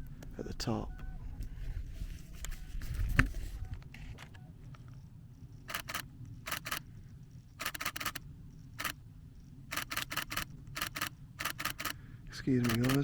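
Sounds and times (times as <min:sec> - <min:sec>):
camera shutter firing: 0:05.7 - 0:06.8, 0:07.6 - 0:08.2, 0:09.7 - 0:12.0, 0:12.6 - 0:13.0.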